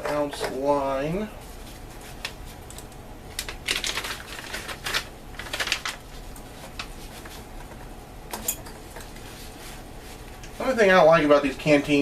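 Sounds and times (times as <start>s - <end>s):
plastic pouch crinkling: 3.3s - 7.3s.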